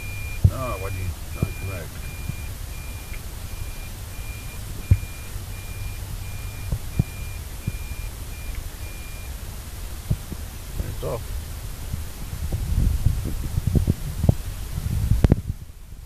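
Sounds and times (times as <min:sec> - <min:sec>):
reverse warning beeps: 0:00.0 - 0:09.4
low steady hum: 0:00.0 - 0:16.0.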